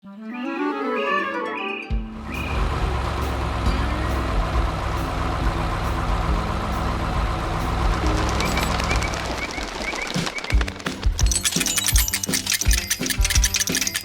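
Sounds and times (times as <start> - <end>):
clarinet-like tune: 0.0 - 2.8
heavy vehicle engine rumble: 2.2 - 9.8.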